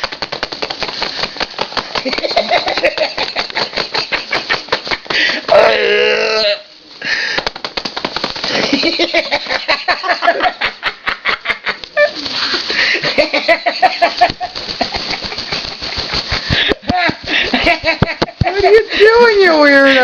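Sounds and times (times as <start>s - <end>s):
cockatoo tapping and clicking: 0.0s - 5.5s, 7.3s - 9.1s.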